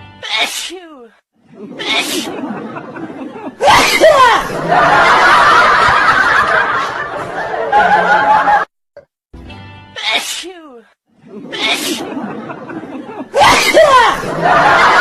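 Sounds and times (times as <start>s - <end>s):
music: 0.0s - 0.2s, 9.4s - 10.0s
person sneezing: 0.2s - 1.1s, 1.7s - 2.4s, 3.6s - 4.6s, 10.0s - 10.7s, 11.4s - 12.2s, 13.3s - 14.3s.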